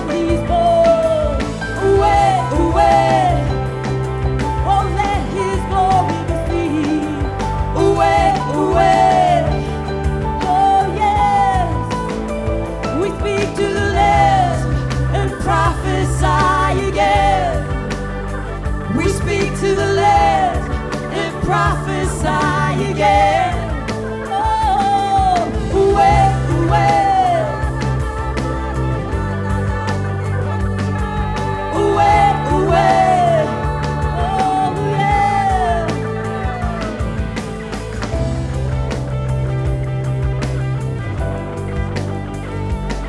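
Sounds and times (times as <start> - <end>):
person singing wordless phrases: 0.0 - 41.8
worship band playing: 0.0 - 43.0.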